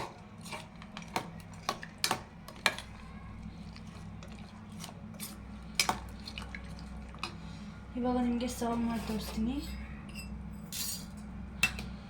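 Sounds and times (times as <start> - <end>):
spoon stirring thick custard: 0.0 - 7.4.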